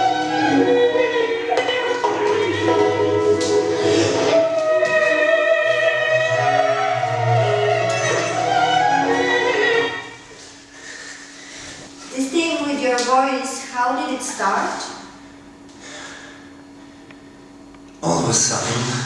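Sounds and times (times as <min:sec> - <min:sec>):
classical instrumental music: 0:00.0 - 0:10.3
operatic singing: 0:00.0 - 0:10.3.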